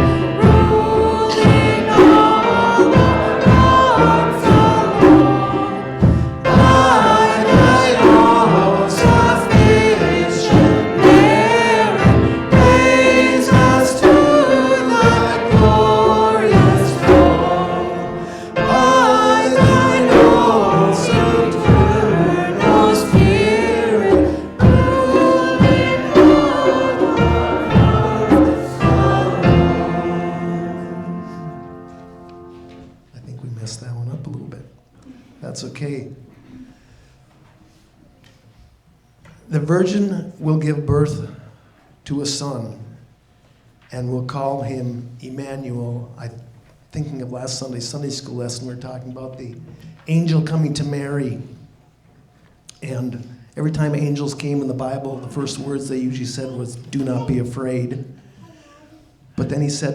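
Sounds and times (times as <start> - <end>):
group singing worship song: 0.0 - 32.9
instrumental accompaniment: 0.0 - 33.0.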